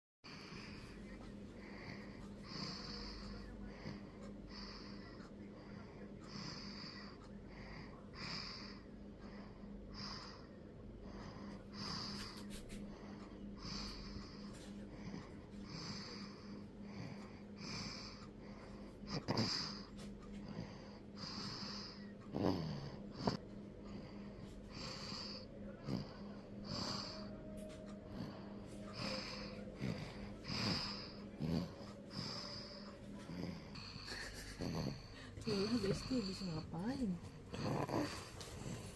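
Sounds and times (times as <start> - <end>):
baby snoring: 15.0 - 27.4, 28.1 - 38.9.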